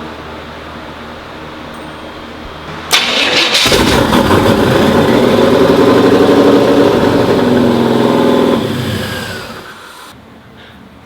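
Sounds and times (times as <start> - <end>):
loud car engine running: 2.9 - 10.1.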